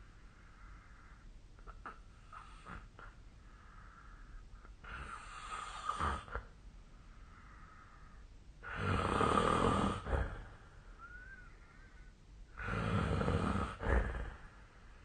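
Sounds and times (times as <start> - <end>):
person snoring: 8.6 - 10.6, 12.6 - 14.5
faint whistle: 11.0 - 12.1.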